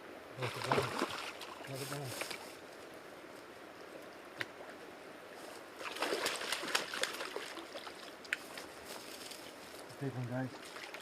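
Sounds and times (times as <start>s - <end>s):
fish splashing in water: 5.8s - 8.1s.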